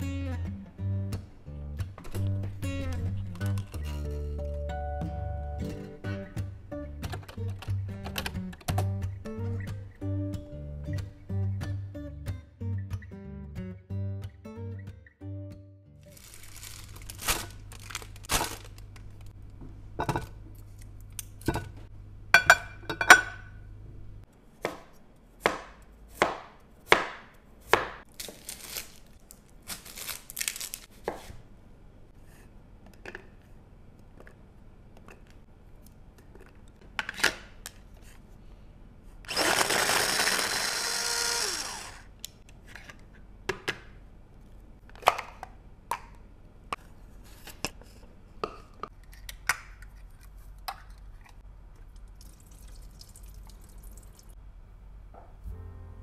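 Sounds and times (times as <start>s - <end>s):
knife chopping on cutting board: 24.6s - 28.0s
low hum: 54.4s - 56.0s.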